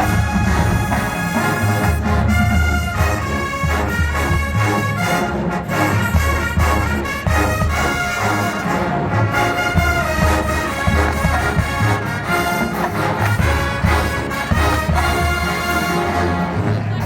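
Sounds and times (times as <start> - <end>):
brass chords: 0.0 - 17.0
low drum beat: 9.6 - 15.8.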